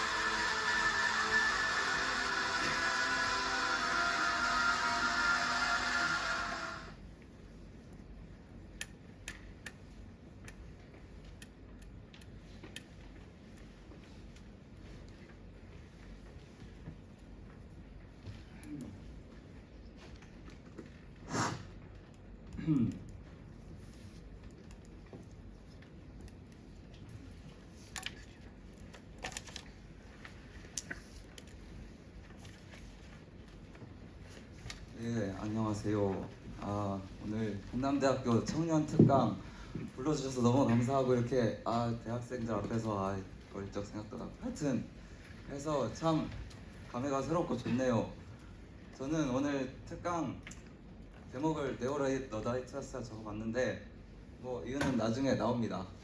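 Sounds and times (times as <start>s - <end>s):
music: 0.0s - 6.9s
faint low hum: 0.0s - 56.0s.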